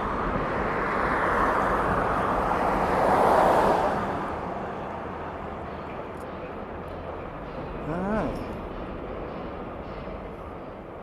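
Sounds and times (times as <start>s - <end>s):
car passing by: 0.0s - 4.6s.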